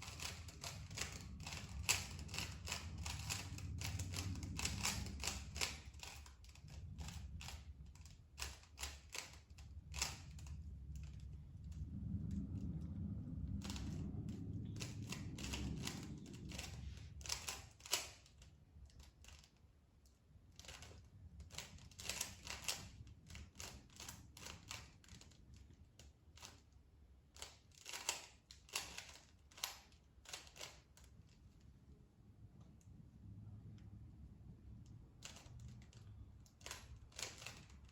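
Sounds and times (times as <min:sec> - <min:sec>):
low rumble: 0:00.0 - 0:19.2, 0:31.2 - 0:37.9
plastic puzzle cube clicking: 0:14.8 - 0:19.6, 0:20.6 - 0:25.3, 0:27.4 - 0:31.1, 0:35.2 - 0:37.7.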